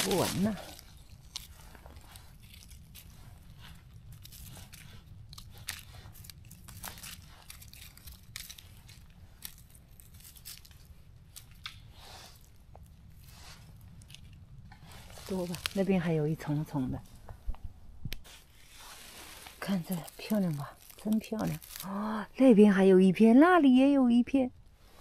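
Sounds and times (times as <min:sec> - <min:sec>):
low steady rumble: 0:00.0 - 0:25.0
scissors snipping mushrooms: 0:04.2 - 0:10.8, 0:19.6 - 0:22.2.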